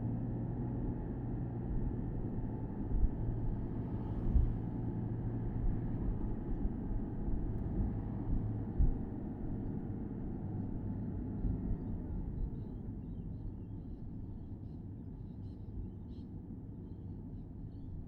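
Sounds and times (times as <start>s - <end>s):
road and wind rumble: 0.0s - 14.4s.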